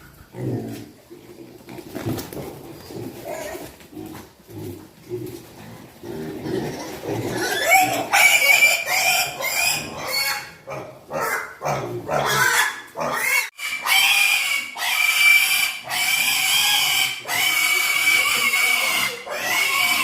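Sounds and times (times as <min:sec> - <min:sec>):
piglets grunting: 0:02.8 - 0:20.0
piglets squealing: 0:06.8 - 0:20.0.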